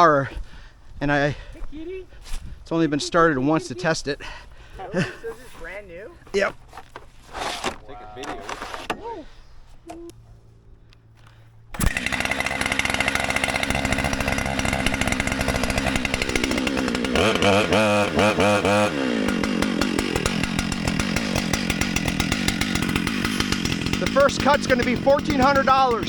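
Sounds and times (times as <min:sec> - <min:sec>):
chainsaw revving and idling: 0:03.2 - 0:06.0, 0:11.2 - 0:26.0.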